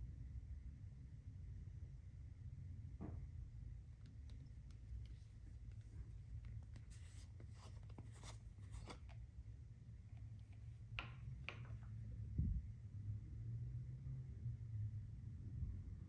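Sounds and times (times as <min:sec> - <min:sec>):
containers scraping and tapping: 0:04.0 - 0:09.2.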